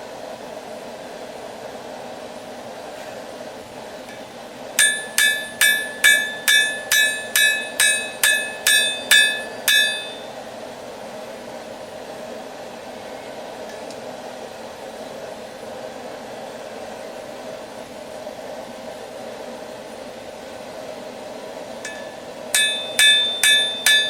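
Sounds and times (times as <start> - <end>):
hammer ringing on anvil: 4.8 - 10.3, 21.8 - 24.0.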